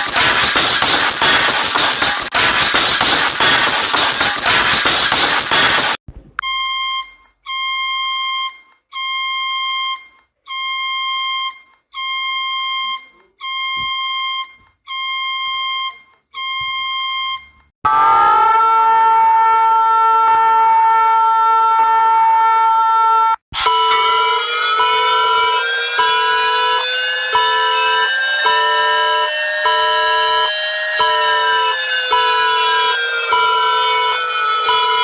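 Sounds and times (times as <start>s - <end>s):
loud electronic beeps: 0.0s - 8.6s, 23.6s - 35.0s
two-tone attention signal: 0.0s - 17.7s, 23.6s - 35.0s.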